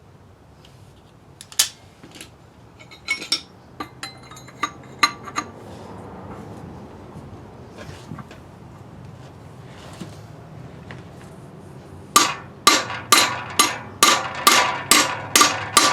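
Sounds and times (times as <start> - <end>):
metal tools clinking on engine parts: 2.8 - 5.6.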